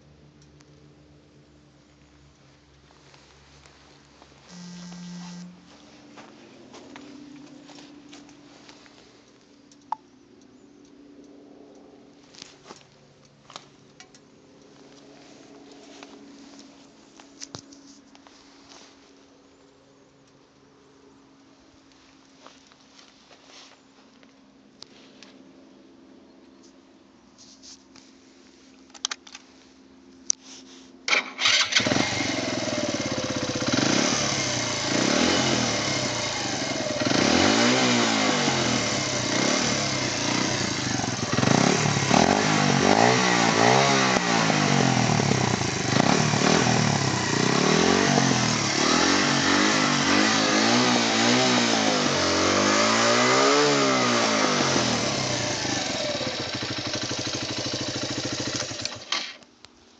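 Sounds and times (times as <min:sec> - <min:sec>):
motorcycle engine revving: 0:03.1 - 0:08.9, 0:31.1 - 0:59.4.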